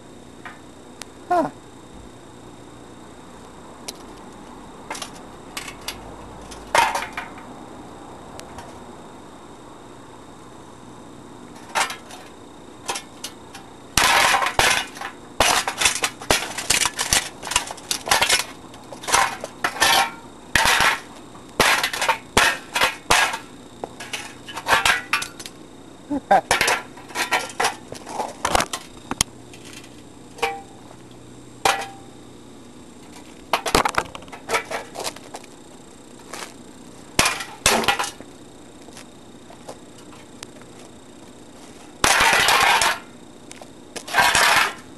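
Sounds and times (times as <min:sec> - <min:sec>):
crowbar breaking fan apart: 0:04.9 - 0:07.4, 0:11.6 - 0:25.5, 0:26.4 - 0:28.9, 0:29.5 - 0:30.7, 0:31.6 - 0:32.1, 0:33.5 - 0:35.2, 0:37.2 - 0:38.2, 0:42.0 - 0:43.1, 0:44.0 - 0:44.9.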